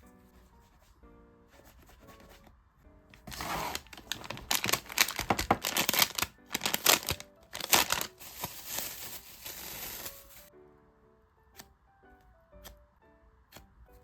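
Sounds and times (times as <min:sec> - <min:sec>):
plastic packaging crinkling: 0:03.2 - 0:10.5.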